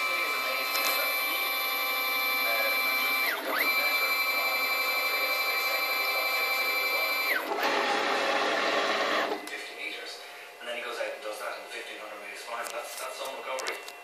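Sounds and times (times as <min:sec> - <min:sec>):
stepper motor whining: 0:00.0 - 0:09.4.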